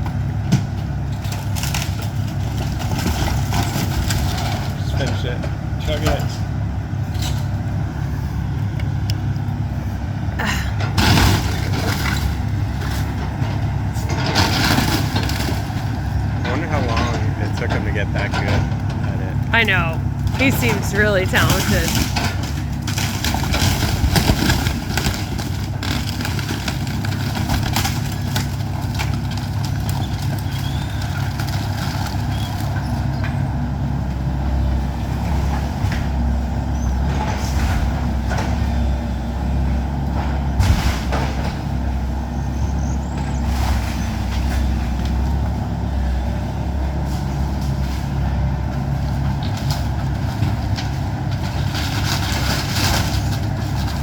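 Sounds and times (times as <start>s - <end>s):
diesel engine running: 0.0s - 54.0s
structure knocking and cracking: 21.6s - 33.4s.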